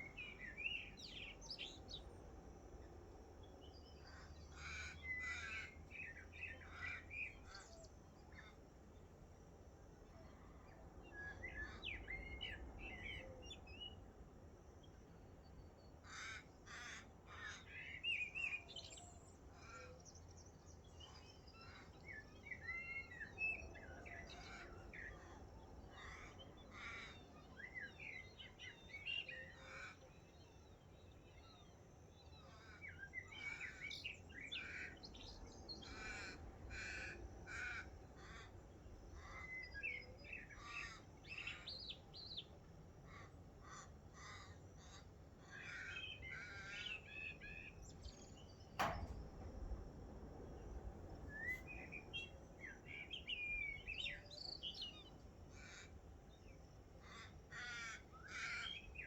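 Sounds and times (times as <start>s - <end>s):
birdsong chirps and whistles: 0.0s - 2.2s, 10.1s - 14.2s, 17.6s - 36.7s, 37.9s - 59.0s.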